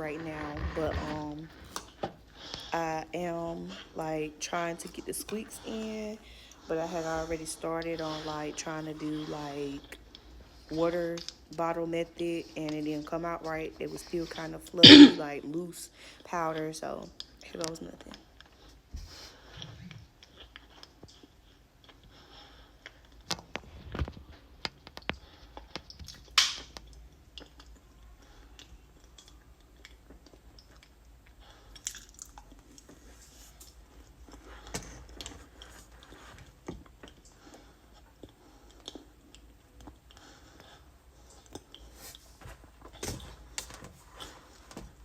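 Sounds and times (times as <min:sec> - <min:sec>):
person chewing cornstarch: 0:18.1 - 0:23.6, 0:24.5 - 0:42.3.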